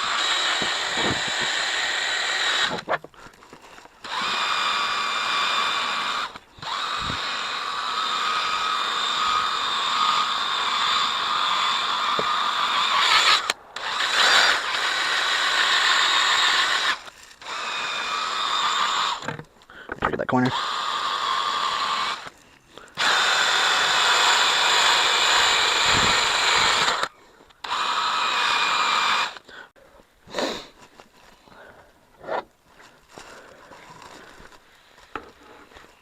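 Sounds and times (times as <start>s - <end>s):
power drill whining: 0.0s - 19.5s, 20.5s - 29.5s.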